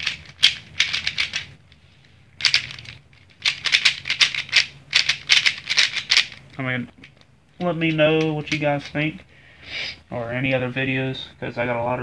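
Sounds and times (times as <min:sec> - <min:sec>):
speed cube clicking and swishing: 0:00.0 - 0:09.3.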